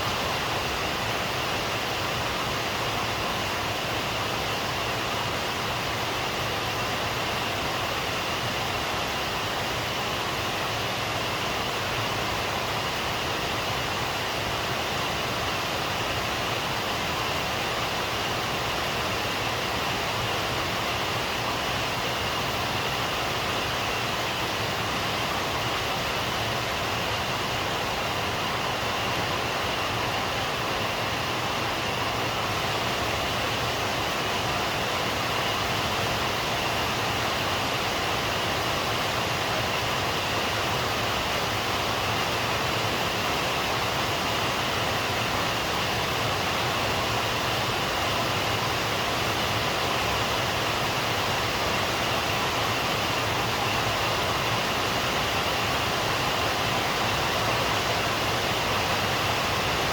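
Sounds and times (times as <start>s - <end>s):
rain falling steadily: 0.0s - 59.9s.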